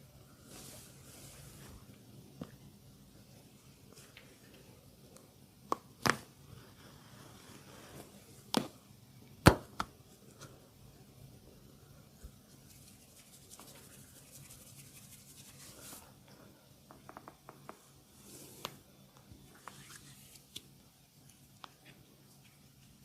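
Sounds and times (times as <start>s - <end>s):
hands rubbing hair and skin: 12.5s - 16.1s.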